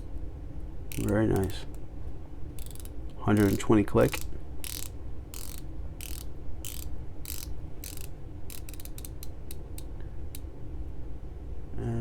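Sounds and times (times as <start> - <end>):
watch bezel ratcheting clicks: 0.9 - 1.6, 2.6 - 9.9.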